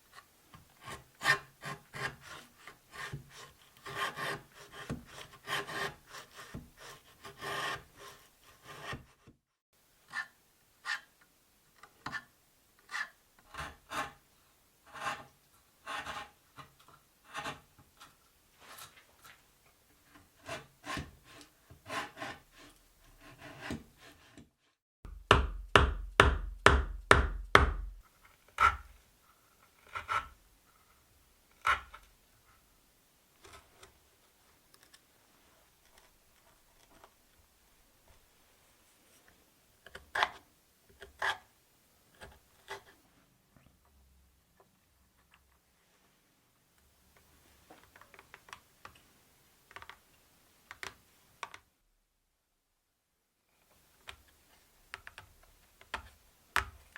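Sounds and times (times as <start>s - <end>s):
hand tool scraping wood: 0.8s - 9.3s, 14.8s - 17.7s, 20.2s - 24.5s.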